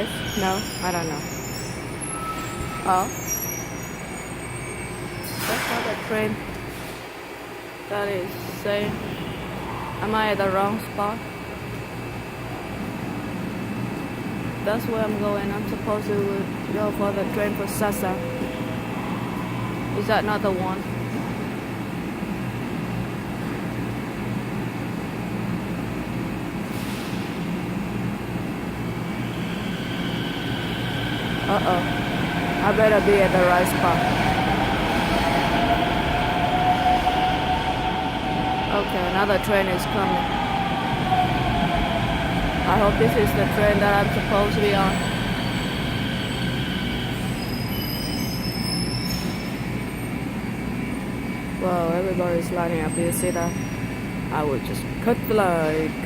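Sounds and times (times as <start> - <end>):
train rumble and hum: 0.0 - 4.4, 5.0 - 56.0
high wheel squeal: 0.0 - 5.7, 44.9 - 49.6.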